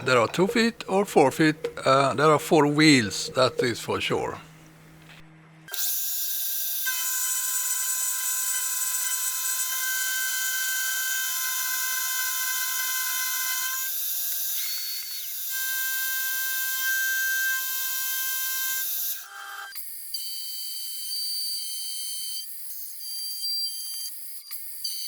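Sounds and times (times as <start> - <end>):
machine tool high-pitched whine: 5.7 - 19.7.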